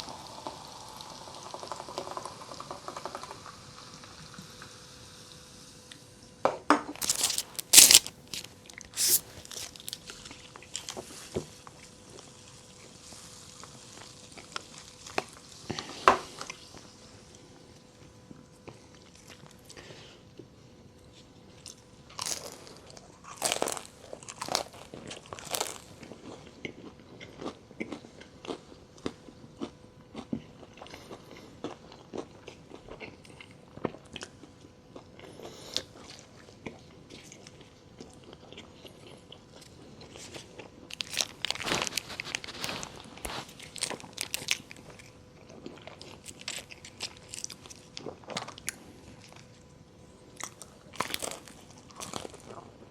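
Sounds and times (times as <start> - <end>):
crunchy bites and chewing: 7.0 - 10.0, 22.2 - 22.7, 23.3 - 25.9, 40.2 - 49.5, 50.4 - 52.7.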